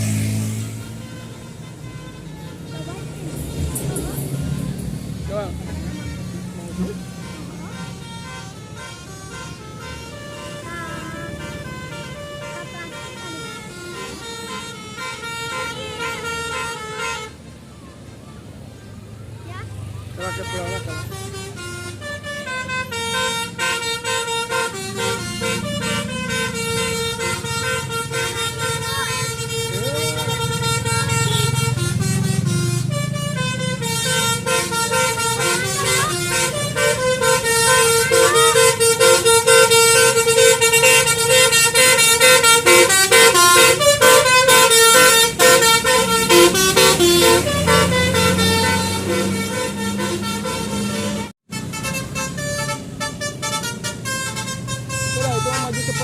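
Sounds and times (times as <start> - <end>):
musical air horns playing melody: 0.0 - 17.6, 20.2 - 56.0.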